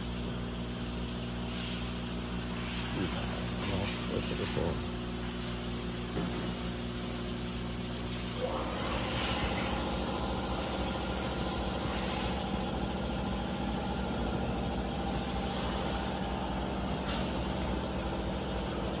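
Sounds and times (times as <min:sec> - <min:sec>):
bursts of hissing: 0:00.6 - 0:06.1.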